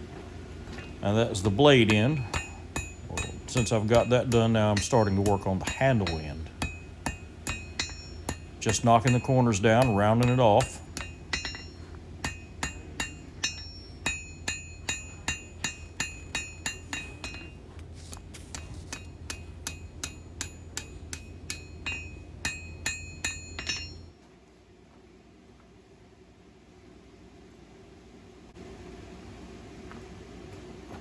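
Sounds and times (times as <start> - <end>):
hammer striking steel on anvil: 0.7 - 24.1.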